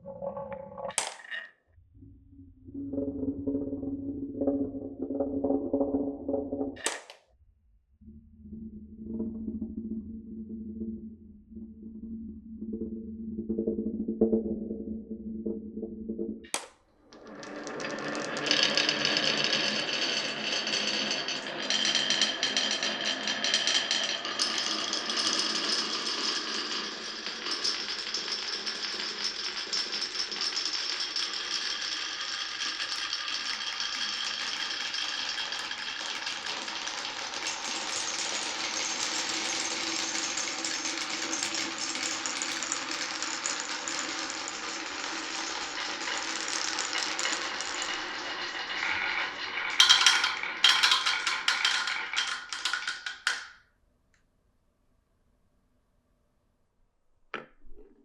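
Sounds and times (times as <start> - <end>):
marbles rattling down wooden run: 4.4 - 7.2, 16.4 - 53.6.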